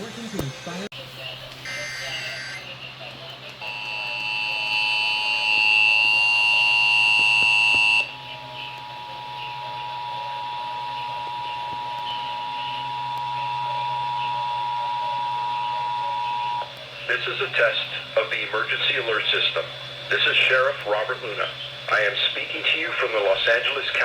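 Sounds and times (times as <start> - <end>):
two-tone alarm: 3.6 - 8.3, 9.2 - 16.7.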